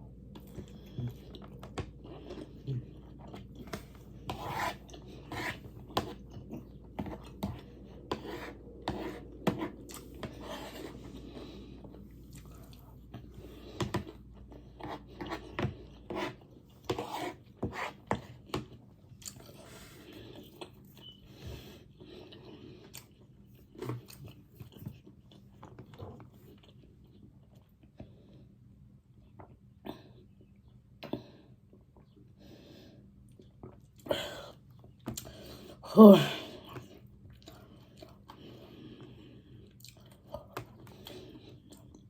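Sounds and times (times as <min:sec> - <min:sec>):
low hum: 0:00.0 - 0:14.4
person chewing crunchy food: 0:00.1 - 0:16.1.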